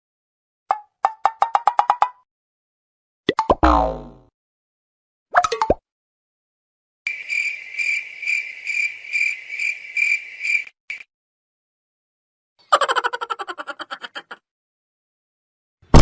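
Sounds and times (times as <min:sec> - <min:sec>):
crickets chirping: 0:07.1 - 0:11.1.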